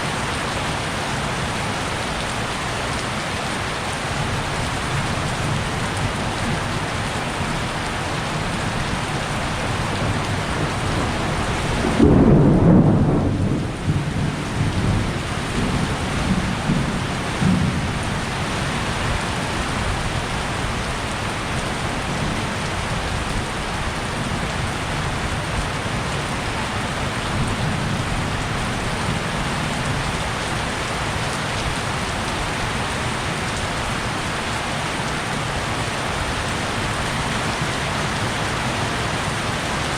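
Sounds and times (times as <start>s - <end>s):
heavy rain falling: 0.0s - 39.9s
thunder clap and rumble: 10.0s - 20.0s.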